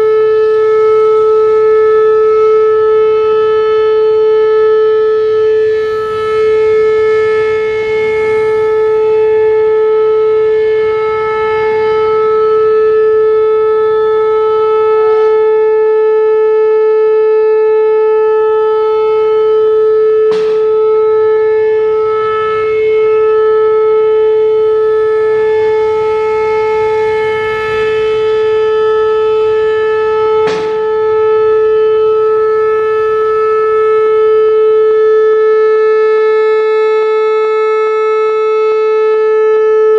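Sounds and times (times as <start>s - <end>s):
electronic warning siren: 0.0s - 39.9s
sharp pops: 30.4s - 31.0s.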